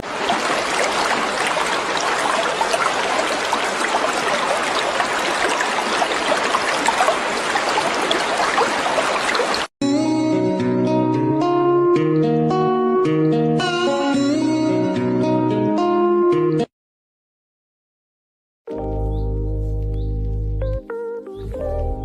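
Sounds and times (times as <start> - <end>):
stream water flowing: 0.0 - 9.7
guitar music: 9.8 - 16.7, 18.7 - 22.0.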